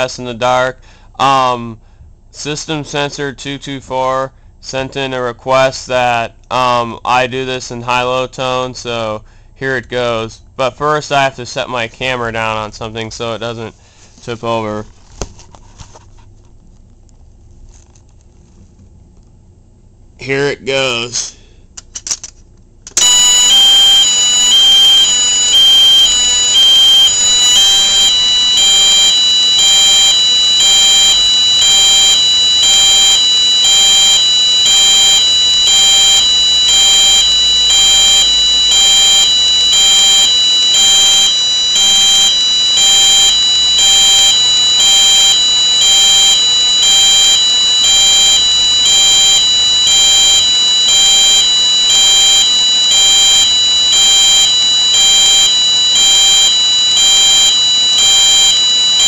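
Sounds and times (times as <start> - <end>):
fire alarm hi lo tone: 23.0 - 59.0
steady high tone: 23.0 - 59.0.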